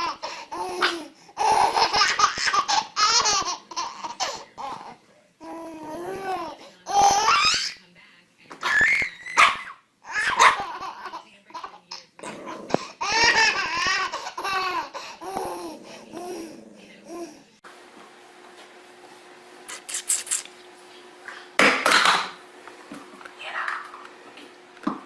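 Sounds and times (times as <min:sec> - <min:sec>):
baby laughing and babbling: 0:00.0 - 0:07.8, 0:10.0 - 0:17.5.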